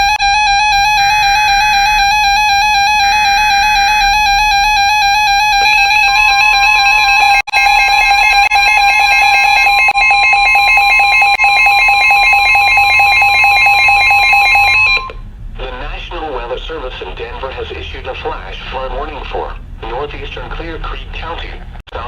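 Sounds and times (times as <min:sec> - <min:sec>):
harsh electronic alarm beep: 0:00.0 - 0:15.2
steady warning alarm tone: 0:00.0 - 0:21.8.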